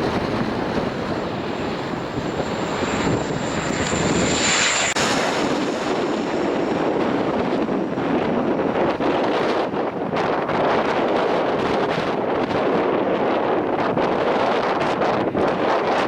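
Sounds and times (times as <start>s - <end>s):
high engine whine: 0.0s - 9.9s
turboprop plane engines: 0.0s - 16.0s
wind buffeting microphone: 0.0s - 16.0s.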